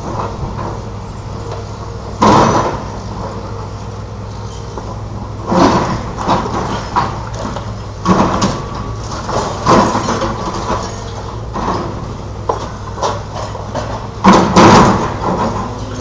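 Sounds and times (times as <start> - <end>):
diesel machine hum: 0.0 - 16.0
rubble crashing and scraping: 4.9 - 16.0.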